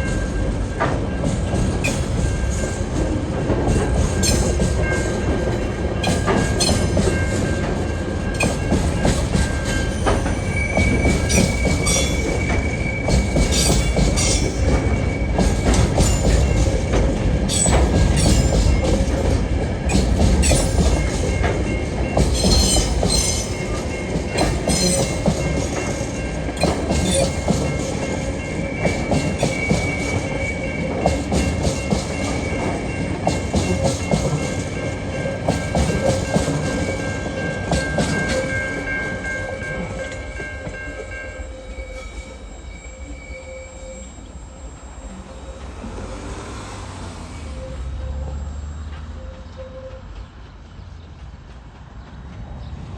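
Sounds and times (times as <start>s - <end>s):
train wheels clicking over rail joints: 0.0s - 41.4s, 48.8s - 52.9s
deep train rumble: 0.0s - 52.9s
high wheel squeal: 8.3s - 16.8s, 24.4s - 32.9s, 41.4s - 48.5s.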